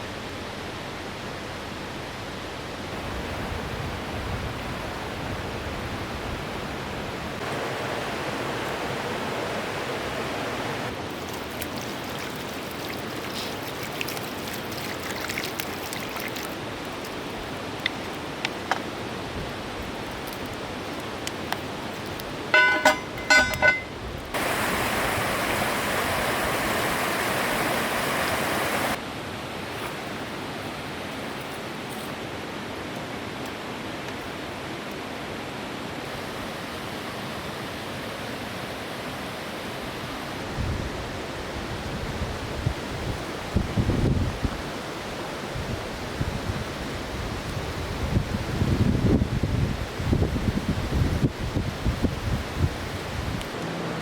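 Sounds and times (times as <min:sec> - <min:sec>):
river water rushing: 0:07.4 - 0:40.5, 0:52.8 - 0:54.0.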